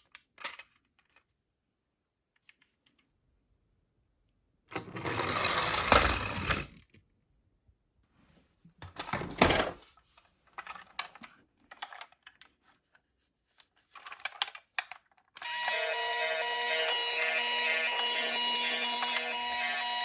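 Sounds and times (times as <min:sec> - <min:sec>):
plastic toy clicking and rattling: 0:10.5 - 0:12.6, 0:13.8 - 0:15.5
toy electronic siren: 0:15.4 - 0:20.0.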